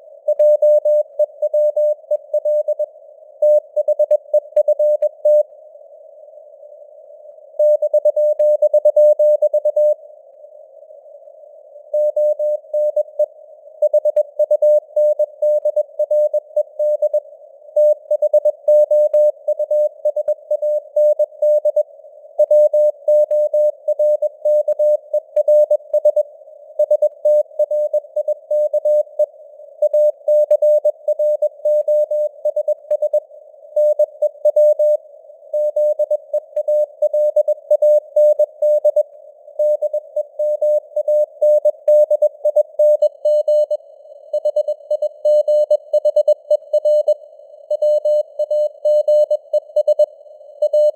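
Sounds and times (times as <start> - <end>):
faint radio noise hiss: 0.0 - 7.8, 10.0 - 14.4.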